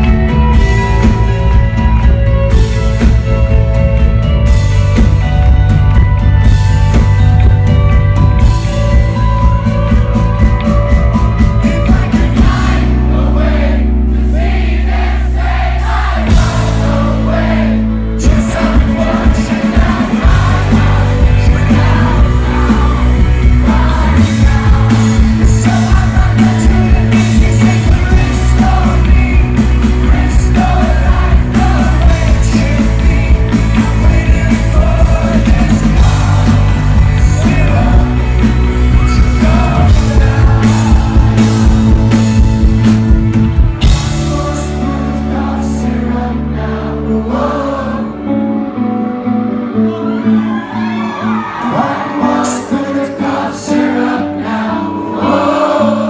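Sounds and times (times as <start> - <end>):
rock band playing live: 0.0 - 56.0
singer singing: 11.2 - 42.9, 43.8 - 56.0.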